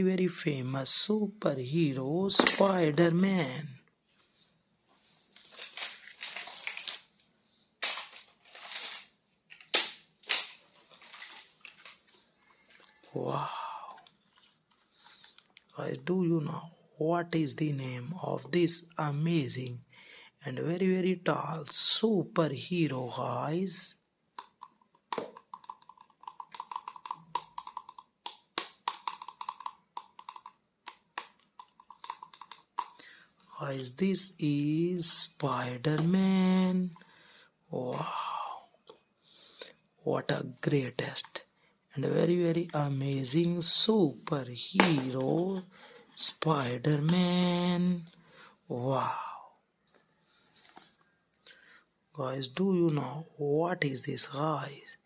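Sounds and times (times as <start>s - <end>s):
plastic packaging rustling: 5.1s - 13.1s, 24.6s - 33.0s
sharp plastic crackles: 5.3s - 12.9s, 24.3s - 33.1s
plastic toy clicking and tapping: 24.4s - 33.0s
sharp plastic knocks: 24.4s - 33.0s.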